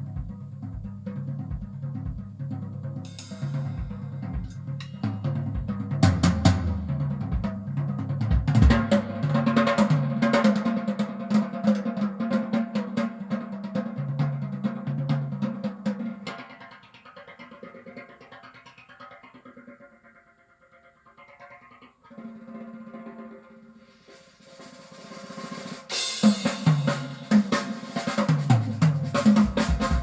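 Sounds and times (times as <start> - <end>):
drum kit: 0.0 - 16.5, 23.9 - 30.0
stepping bass line: 29.2 - 30.0.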